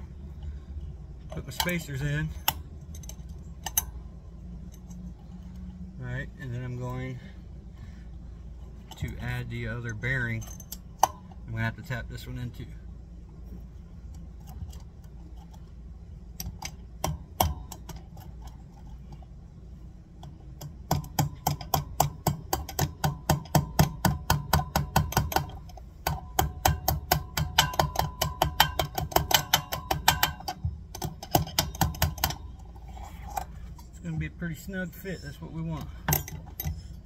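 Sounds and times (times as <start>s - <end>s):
hammer tapping metal: 20.6s - 32.6s.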